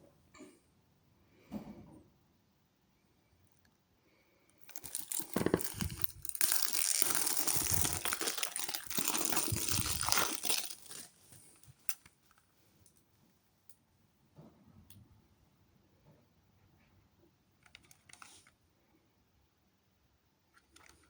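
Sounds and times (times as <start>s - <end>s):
plastic shrink-wrap tearing and crinkling: 4.6s - 12.0s.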